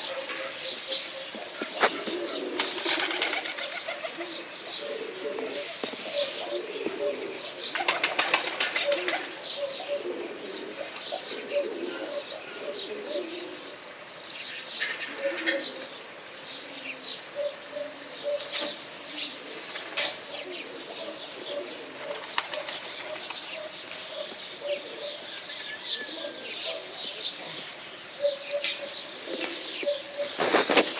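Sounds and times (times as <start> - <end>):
birds chirping and calling: 0.0 - 30.9
wings flapping: 1.8 - 4.2, 7.7 - 9.4, 30.2 - 30.9
low cooing notes: 4.1 - 7.7.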